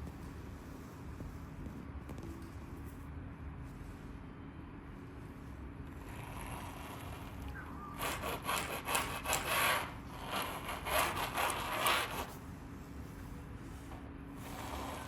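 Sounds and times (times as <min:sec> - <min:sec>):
scratchy rubbing and scraping: 0:08.0 - 0:12.4.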